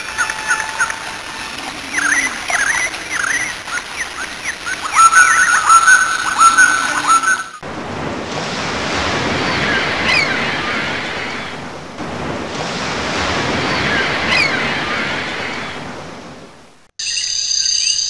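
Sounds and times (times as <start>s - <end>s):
falling high-pitched call: 0.0s - 7.6s
ocean waves washing: 0.0s - 16.9s.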